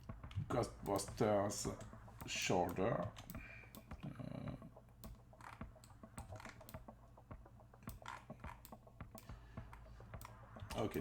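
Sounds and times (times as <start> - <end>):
steady low hum: 0.0 - 11.0
computer keys clicking: 5.0 - 6.9.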